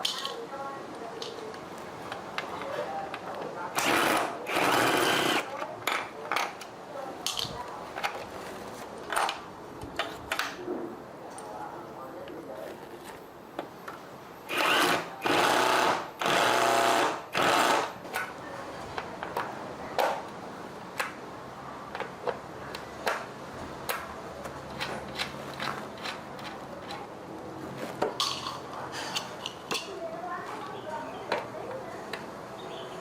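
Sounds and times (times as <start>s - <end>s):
small electric motor running: 14.5s - 17.9s.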